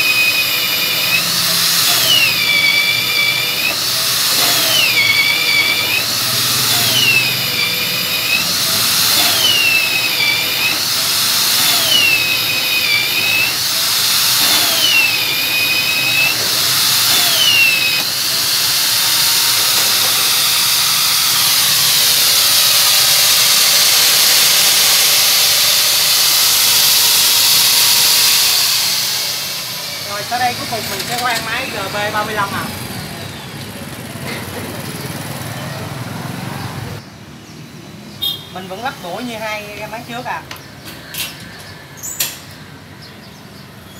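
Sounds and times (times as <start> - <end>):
magnetic drill motor whine: 0.0 - 33.6.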